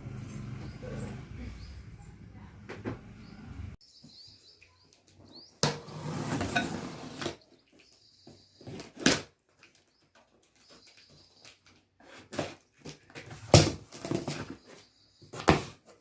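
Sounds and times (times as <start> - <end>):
cardboard rustling and scraping: 12.0 - 16.0.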